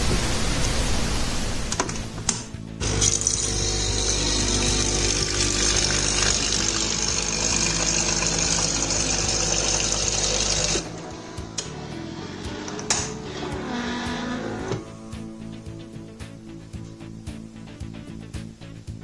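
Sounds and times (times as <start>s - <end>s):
espresso machine pump running: 2.8s - 14.8s.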